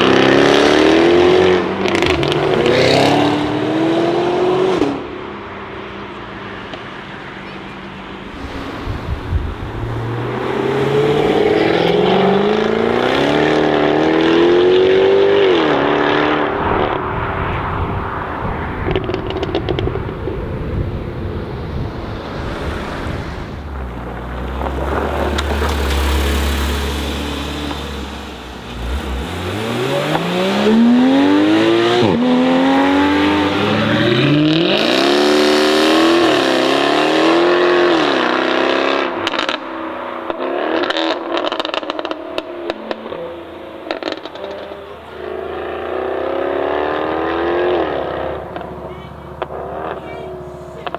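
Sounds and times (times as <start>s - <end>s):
car engine accelerating hard: 0.0s - 50.9s
low steady engine rumble: 43.0s - 50.9s.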